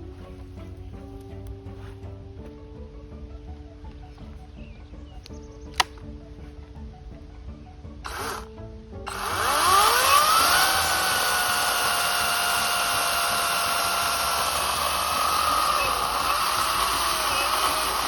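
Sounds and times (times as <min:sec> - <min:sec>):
electric chainsaw whining: 0:08.1 - 0:08.5, 0:09.1 - 0:18.0.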